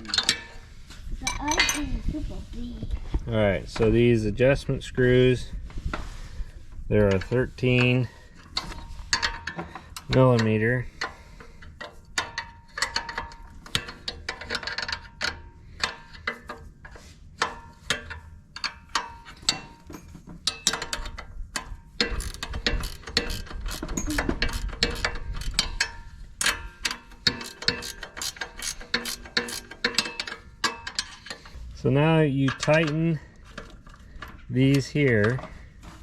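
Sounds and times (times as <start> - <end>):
ratchet wrench clicking: 22.0 - 31.4.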